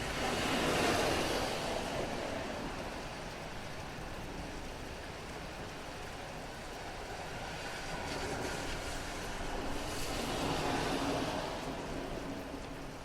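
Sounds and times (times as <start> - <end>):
steady rain: 0.0 - 13.0
car passing on wet road: 7.6 - 13.0.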